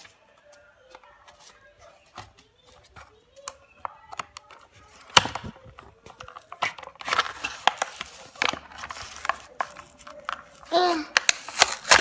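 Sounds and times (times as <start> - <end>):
plastic packaging snapping: 3.4 - 12.0
plastic crinkling and tearing: 4.7 - 12.0.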